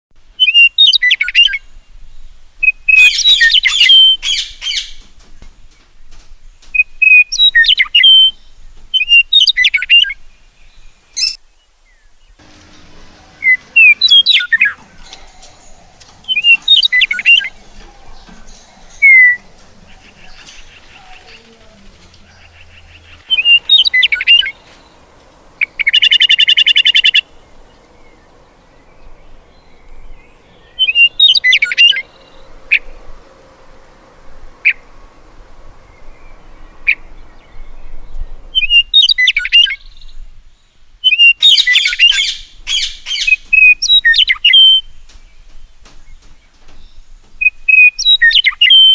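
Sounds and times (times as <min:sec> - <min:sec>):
parrots calling: 0:02.6 - 0:05.1, 0:11.2 - 0:11.4, 0:12.4 - 0:33.7, 0:41.1 - 0:44.8.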